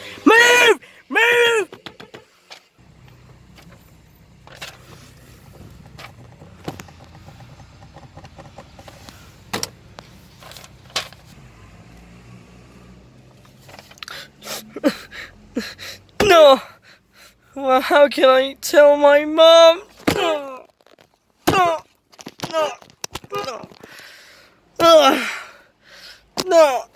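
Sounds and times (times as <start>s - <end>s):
car engine idling: 2.8s - 18.2s.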